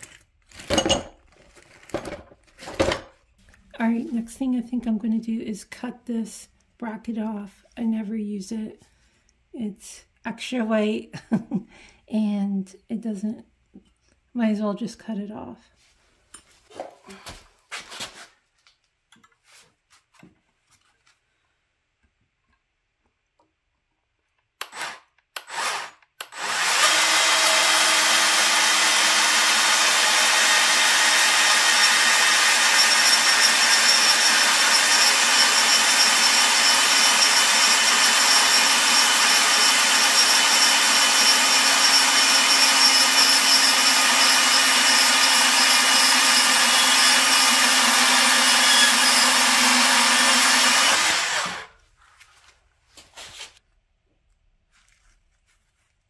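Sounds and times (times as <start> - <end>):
power tool cutting metal: 24.6 - 51.7.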